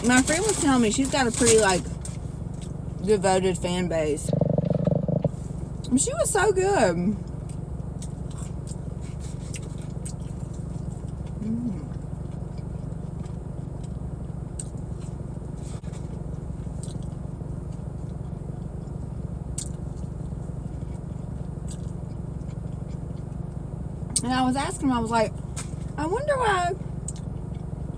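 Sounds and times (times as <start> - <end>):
car engine idling: 0.0 - 27.9
person chewing: 7.5 - 15.2, 16.6 - 18.8, 19.5 - 23.6.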